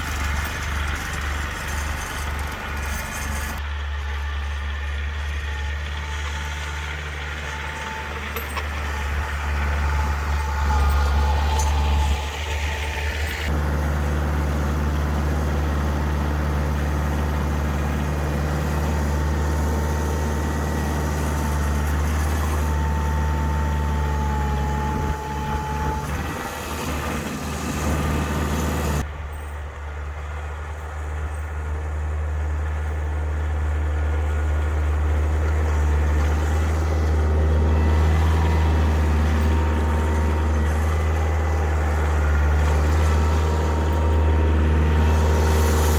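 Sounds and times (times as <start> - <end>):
tractor diesel engine running: 0.0 - 45.9.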